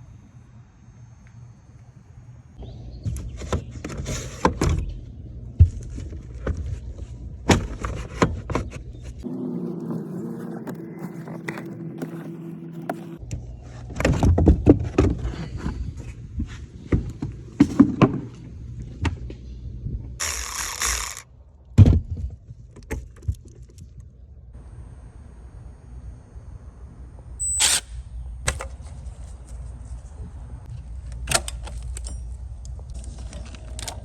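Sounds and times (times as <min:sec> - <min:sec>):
steady hum: 0:00.0 - 0:03.1, 0:24.4 - 0:34.0.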